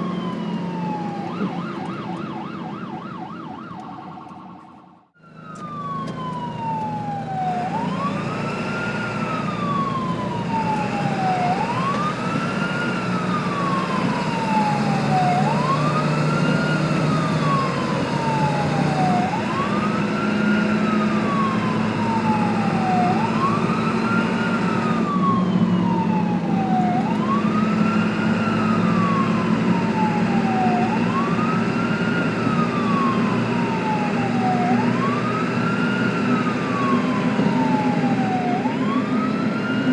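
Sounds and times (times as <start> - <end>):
emergency siren wailing: 0.0 - 39.9
low engine hum: 5.4 - 36.1.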